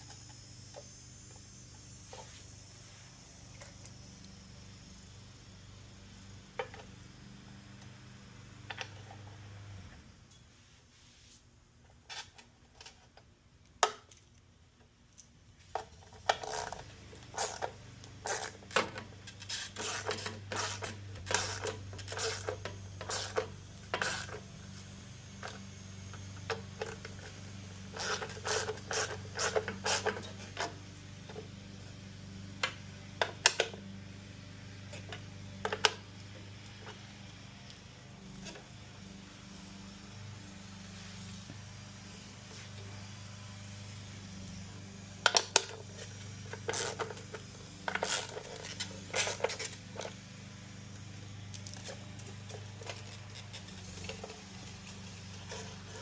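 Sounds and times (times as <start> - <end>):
steady low hum: 0.0 - 56.0
tools and parts clicking: 12.1 - 24.4.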